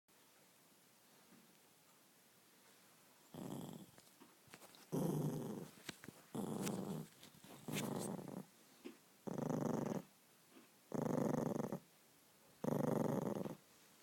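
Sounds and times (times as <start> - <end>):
dog growling: 3.3 - 4.0, 4.9 - 8.5, 9.2 - 10.1, 10.9 - 11.9, 12.6 - 13.6.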